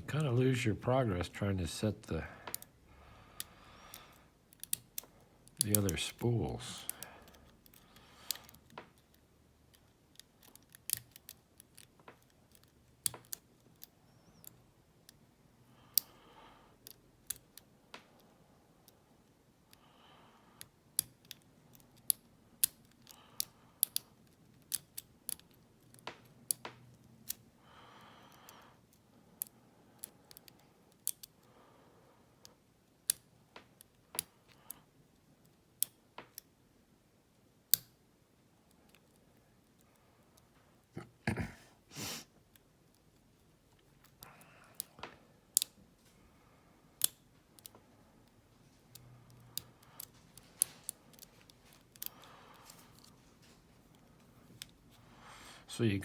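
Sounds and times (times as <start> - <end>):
lock pick clicking: 4.5 - 6.0, 6.8 - 15.2, 47.0 - 47.7.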